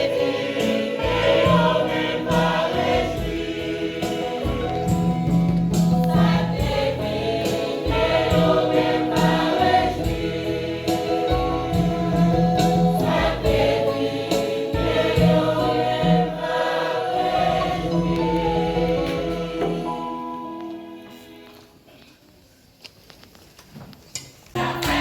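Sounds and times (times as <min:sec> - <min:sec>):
church choir singing: 0:00.0 - 0:21.9, 0:24.6 - 0:25.0
percussive strikes: 0:17.2 - 0:20.2.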